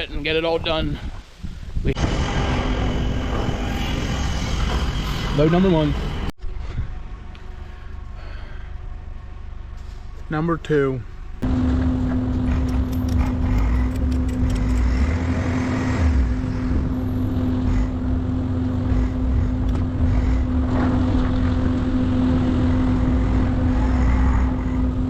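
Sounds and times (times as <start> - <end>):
vehicle engine running: 6.4 - 25.0.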